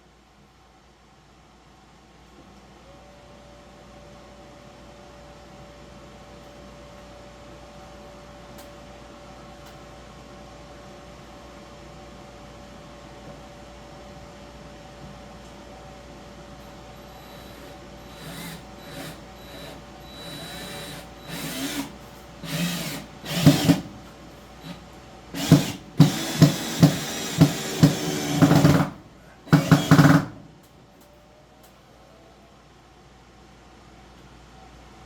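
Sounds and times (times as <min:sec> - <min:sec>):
power drill driving screws into wood: 0:17.2 - 0:24.0, 0:25.4 - 0:30.4.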